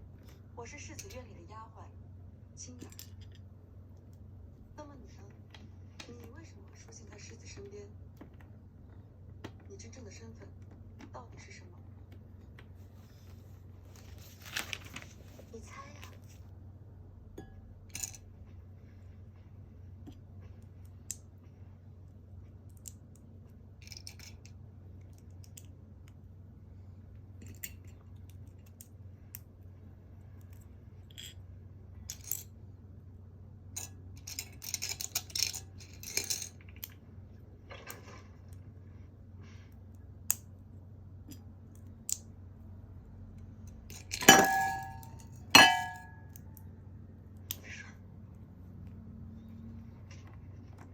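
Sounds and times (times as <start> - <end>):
loud ringing clink: 44.2 - 46.3.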